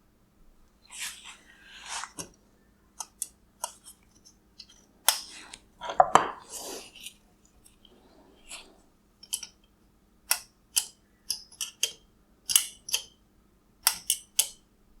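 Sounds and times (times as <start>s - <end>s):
scraping and rustling: 0.9s - 2.3s.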